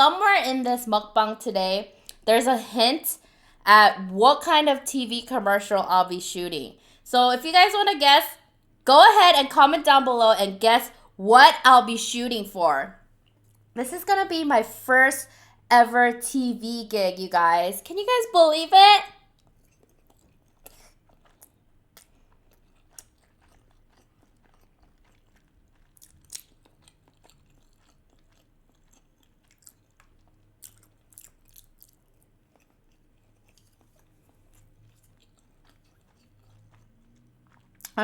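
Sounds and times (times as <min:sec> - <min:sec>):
wet chewing mouth clicks: 0:02.0 - 0:02.2, 0:13.2 - 0:13.7, 0:19.2 - 0:38.0.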